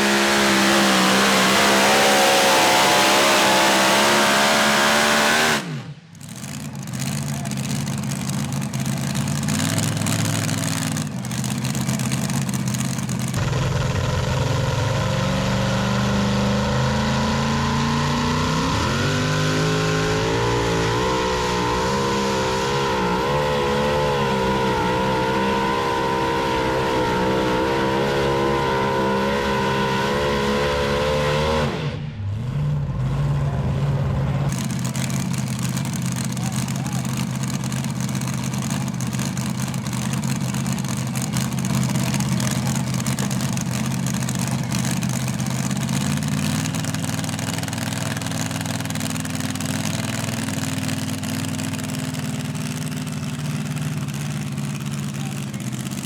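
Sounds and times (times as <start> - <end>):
vehicle engine revving under load: 0.0 - 56.0.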